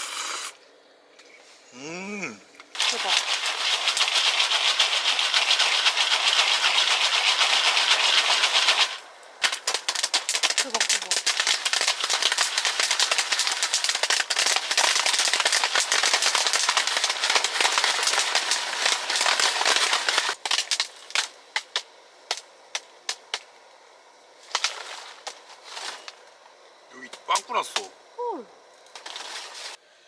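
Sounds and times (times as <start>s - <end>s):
food sizzling and spattering: 0.0s - 0.6s, 2.8s - 22.5s.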